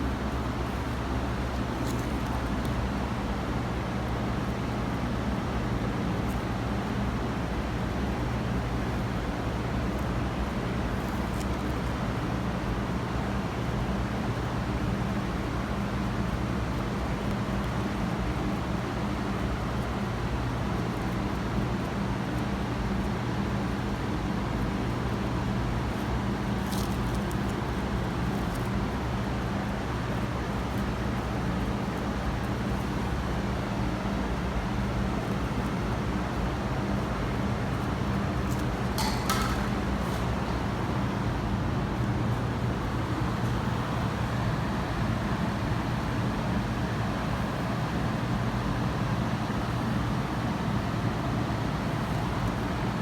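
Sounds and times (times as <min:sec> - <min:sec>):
low background hum: 0:00.0 - 0:53.0.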